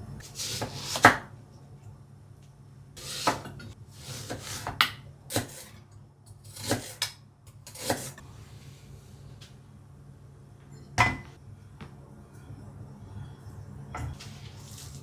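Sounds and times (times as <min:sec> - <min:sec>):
kitchenware rubbing and scraping: 0:03.0 - 0:05.8
kitchenware knocking and clinking: 0:10.8 - 0:11.4.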